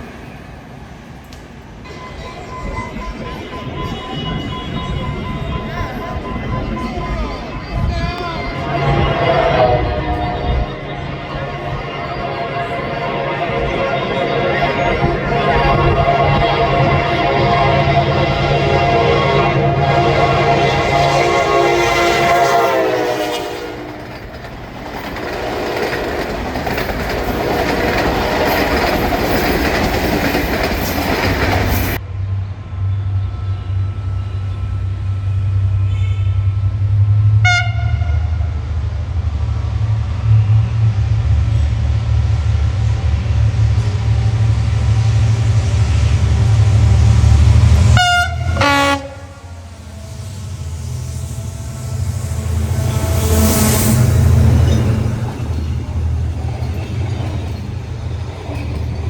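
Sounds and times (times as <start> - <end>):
locomotive rumbling: 0.0 - 59.0
train cars rushing and clattering: 0.0 - 59.0
train horn: 1.9 - 24.4, 25.2 - 29.5, 32.8 - 38.8, 46.4 - 56.9.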